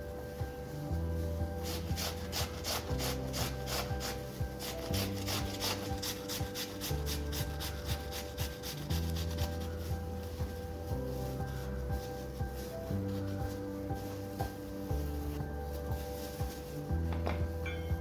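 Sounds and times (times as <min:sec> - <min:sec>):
background music: 0:00.0 - 0:18.0.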